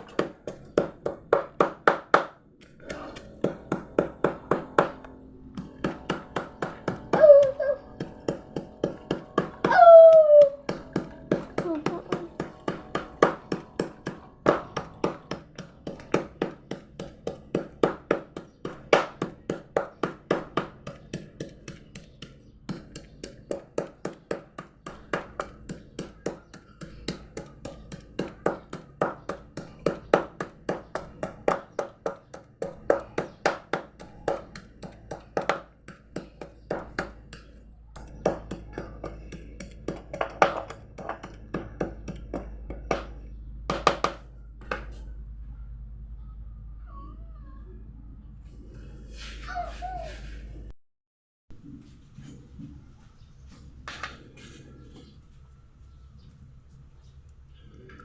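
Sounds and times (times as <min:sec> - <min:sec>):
low hum: 0:02.4 - 0:16.0
rapid knocks on a hard surface: 0:08.0 - 0:45.0.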